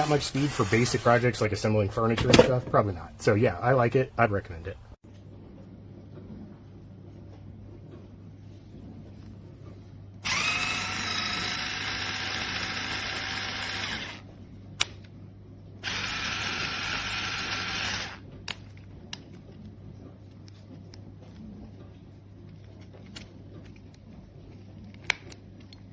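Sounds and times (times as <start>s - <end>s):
electric screwdriver whining: 0.0s - 1.2s, 10.2s - 14.2s, 15.8s - 18.2s.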